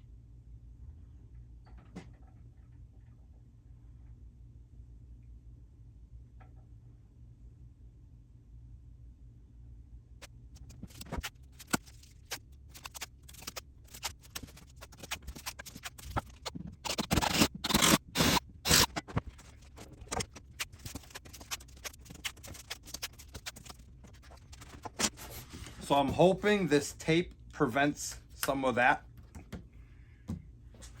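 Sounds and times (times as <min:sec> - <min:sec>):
tape ripping off roll: 0:10.6 - 0:25.6
tape rubbed onto wooden door: 0:10.6 - 0:25.8.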